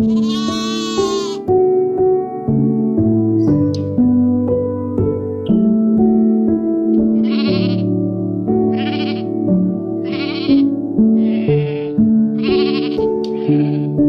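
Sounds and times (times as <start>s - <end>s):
sheep bleating: 0.0s - 1.5s, 7.0s - 7.9s, 8.7s - 9.4s, 10.0s - 14.0s
soft piano music: 0.0s - 14.0s.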